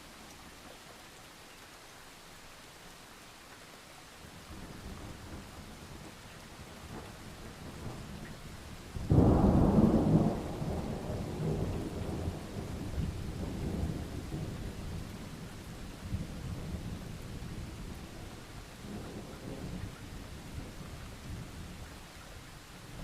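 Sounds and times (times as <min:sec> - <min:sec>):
steady rain: 0:00.0 - 0:23.0
thunderclap rumbling: 0:08.9 - 0:15.1.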